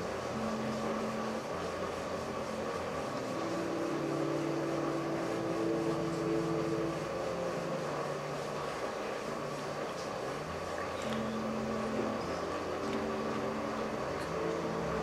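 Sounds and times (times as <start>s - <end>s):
higher tone: 0.0s - 9.8s, 10.8s - 15.0s
machine hum with held tones: 0.0s - 15.0s.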